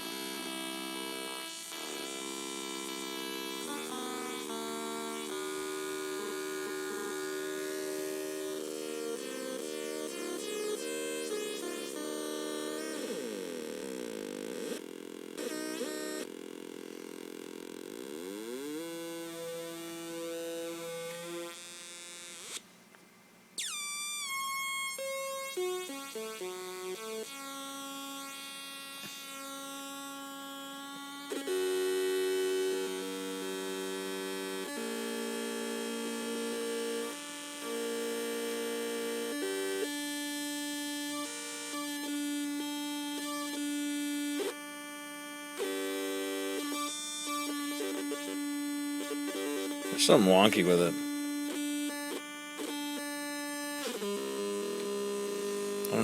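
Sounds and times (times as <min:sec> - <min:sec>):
buzzy electronic synth drone: 0:00.0 - 0:22.6
steady buzzy synth tone: 0:00.0 - 0:22.6, 0:23.6 - 0:56.0.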